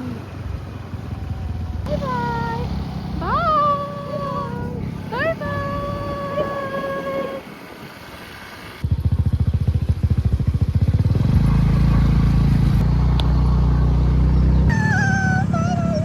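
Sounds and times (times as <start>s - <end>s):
scooter engine running: 8.8s - 16.0s
wavering pitched tone: 14.7s - 16.0s.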